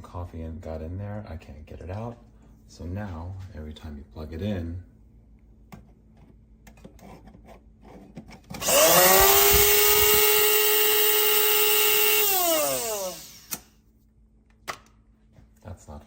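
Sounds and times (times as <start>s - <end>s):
coffee grinder motor: 8.6s - 13.6s.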